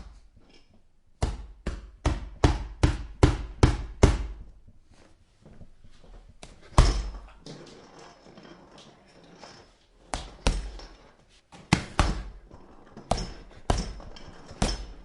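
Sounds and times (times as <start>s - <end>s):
punches thudding on punching bag: 1.2s - 4.4s, 11.6s - 12.4s.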